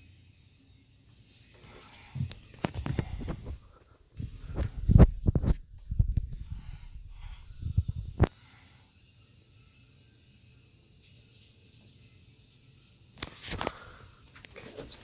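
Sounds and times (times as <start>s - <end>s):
low thumps: 2.2s - 8.3s.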